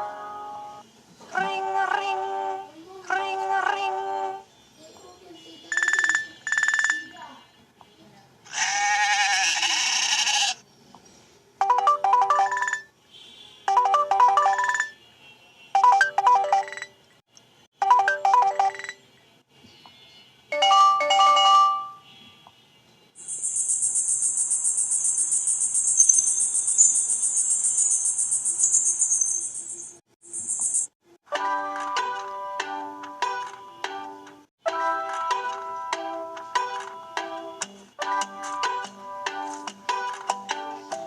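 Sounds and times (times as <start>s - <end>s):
phone ringtone chime: 5.7s - 7.1s, 11.6s - 12.9s, 13.7s - 15.0s, 15.8s - 16.9s, 17.8s - 19.0s, 20.5s - 22.0s.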